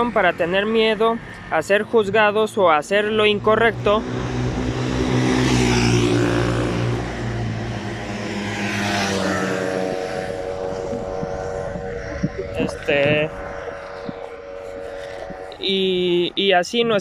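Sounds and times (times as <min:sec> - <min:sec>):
passing motor vehicle engine: 0:03.0 - 0:16.4.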